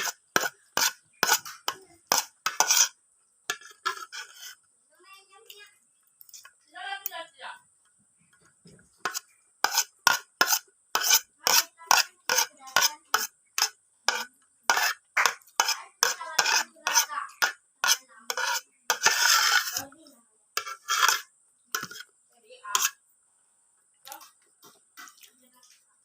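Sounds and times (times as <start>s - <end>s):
cutlery scraping a plate: 0.0s - 4.6s, 9.0s - 19.8s, 20.6s - 22.1s, 22.7s - 23.0s.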